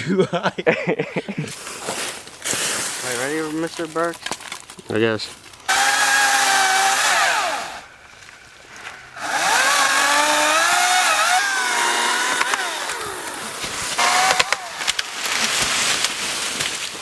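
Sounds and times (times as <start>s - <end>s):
electric chainsaw whining: 5.7s - 7.9s, 9.2s - 15.5s.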